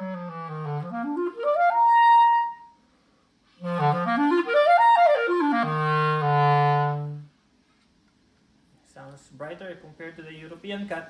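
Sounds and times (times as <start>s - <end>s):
clarinet runs: 0.0s - 2.7s, 3.6s - 7.3s.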